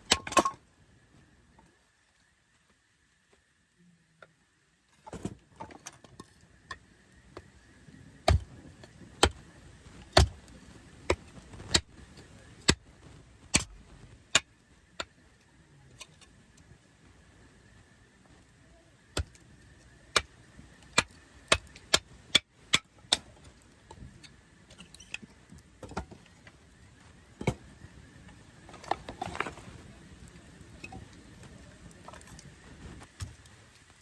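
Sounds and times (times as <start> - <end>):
wood campfire crackling: 6.2 - 34.0
fire popping and snapping: 8.2 - 15.1, 19.2 - 34.0.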